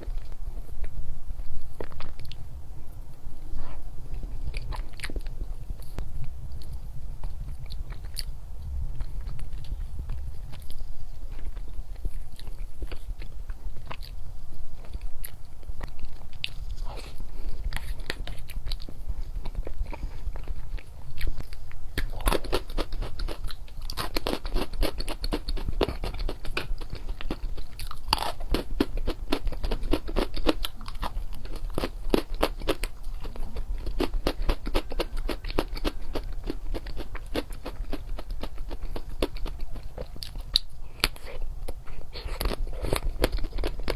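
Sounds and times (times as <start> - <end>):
chewing and crunching chocolates: 0.0 - 2.5, 3.5 - 43.9.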